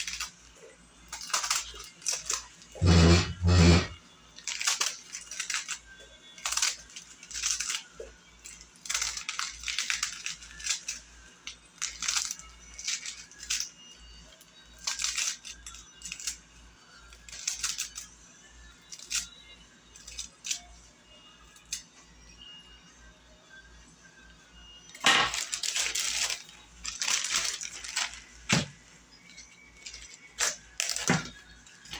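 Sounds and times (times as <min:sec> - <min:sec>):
salad ingredients rustling and rattling: 0:25.3 - 0:28.8.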